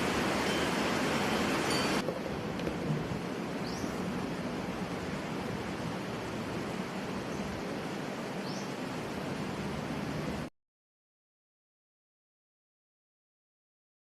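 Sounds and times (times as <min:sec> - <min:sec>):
outdoor ambient hiss: 0:00.0 - 0:10.5.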